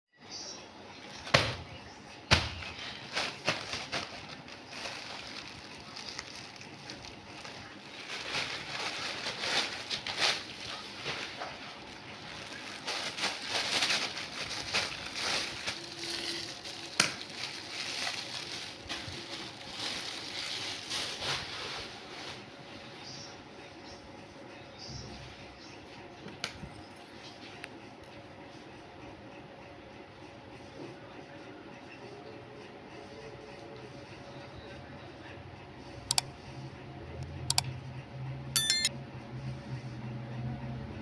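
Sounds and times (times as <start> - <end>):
packaging rustling and crackling: 2.4 - 22.6.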